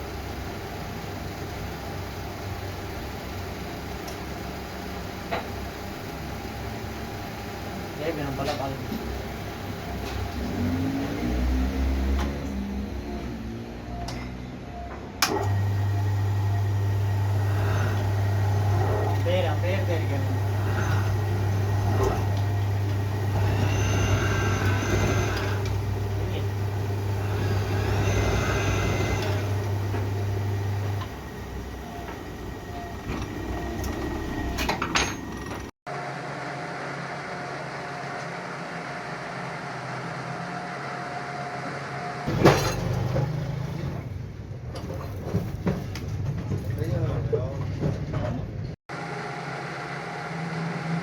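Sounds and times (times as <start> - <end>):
truck engine running: 15.5 - 46.4.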